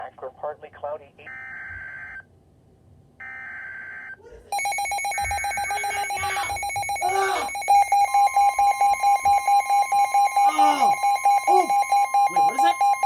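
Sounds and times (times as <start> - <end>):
two-tone electronic alarm: 1.3 - 2.2, 3.2 - 13.0
digital data screech: 4.6 - 7.9, 10.4 - 13.0.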